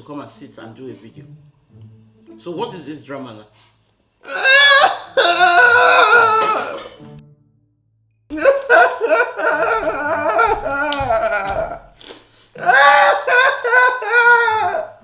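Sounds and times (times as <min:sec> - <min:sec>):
boy wailing: 0:04.2 - 0:07.0, 0:08.3 - 0:12.0, 0:12.6 - 0:15.0.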